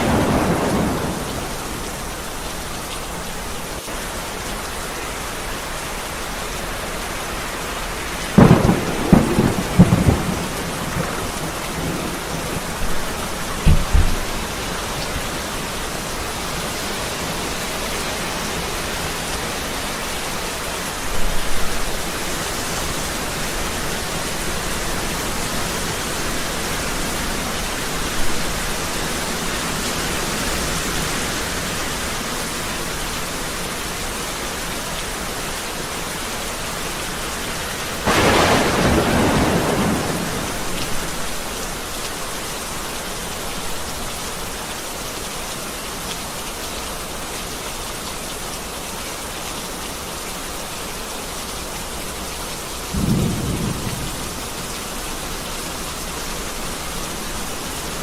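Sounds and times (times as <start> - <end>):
thunder rumbling and cracking: 0.0 - 2.7, 8.4 - 15.8, 38.0 - 41.5, 52.9 - 54.7
heavy rain pouring: 0.0 - 58.0.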